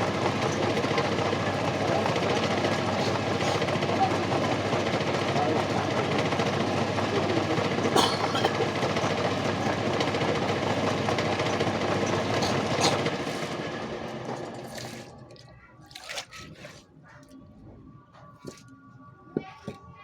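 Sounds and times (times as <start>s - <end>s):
water churning: 0.0s - 17.4s.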